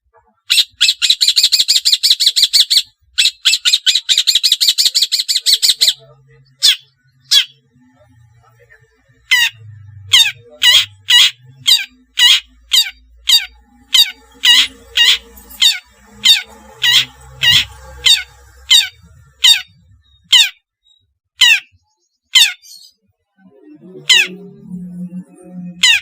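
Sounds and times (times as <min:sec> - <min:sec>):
shrike harsh calls: 0:09.2 - 0:20.5.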